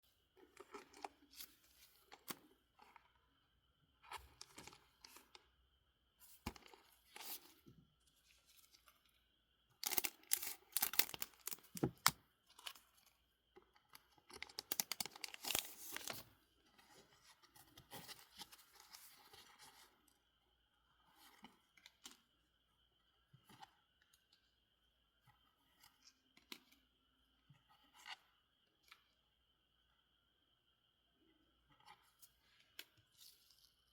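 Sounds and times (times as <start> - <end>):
foil wrapper tearing: 9.8 - 11.6
foil wrapper crinkling: 9.8 - 11.9, 14.4 - 16.2.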